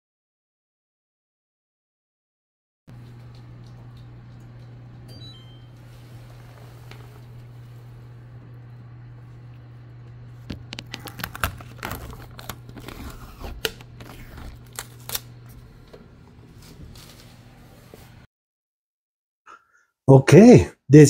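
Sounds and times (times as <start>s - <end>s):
clicks taps and crinkling: 2.9s - 5.1s, 9.4s - 16.1s
steady low hum: 2.9s - 18.3s.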